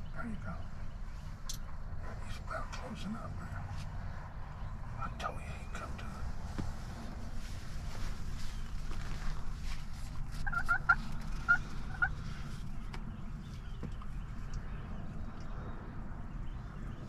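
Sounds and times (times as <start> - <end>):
low background rumble: 0.0 - 17.0
turkey calling: 10.1 - 12.7.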